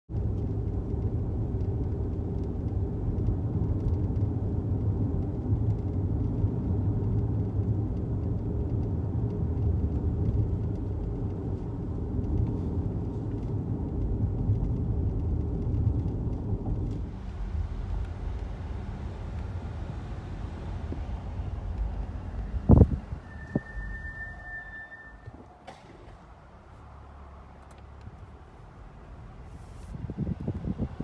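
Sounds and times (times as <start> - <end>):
road rumble: 0.1 - 31.0.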